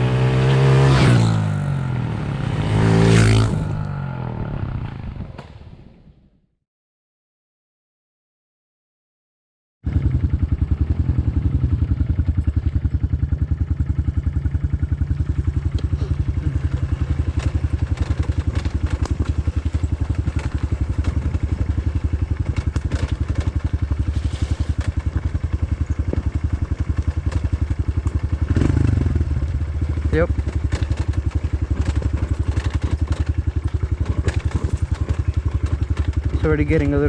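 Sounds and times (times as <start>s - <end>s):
motorcycle engine running: 0.0s - 6.0s, 9.8s - 37.0s
bike clattering over trail: 15.3s - 28.8s, 29.4s - 37.0s.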